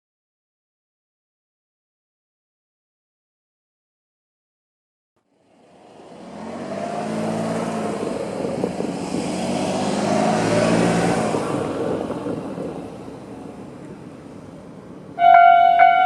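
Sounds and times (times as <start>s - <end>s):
vehicle engine passing by: 5.3s - 16.0s.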